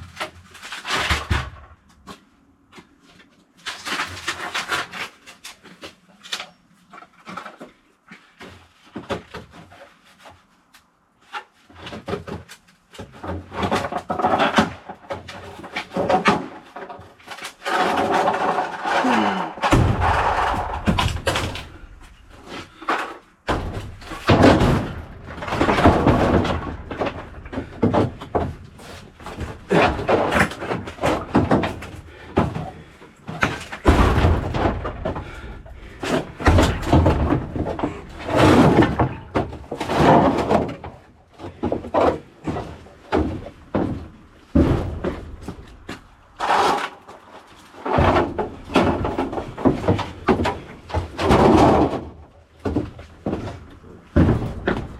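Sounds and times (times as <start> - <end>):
bangs knocks and clunks in small room: 11.8 - 54.9.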